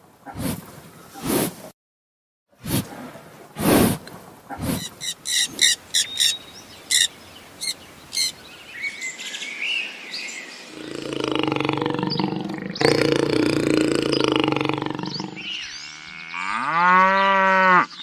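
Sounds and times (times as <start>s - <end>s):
high-pitched animal calls: 4.5s - 8.3s, 10.7s - 16.6s
cow mooing: 10.8s - 18.0s.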